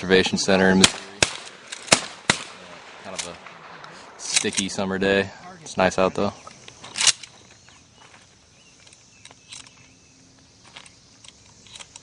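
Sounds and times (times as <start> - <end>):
high insect buzz: 4.6 - 12.0.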